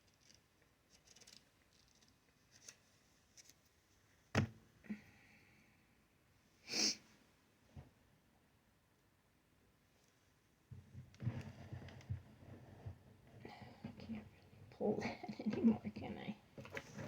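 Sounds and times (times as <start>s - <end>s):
breathy sniff or exhale: 6.7s - 7.1s.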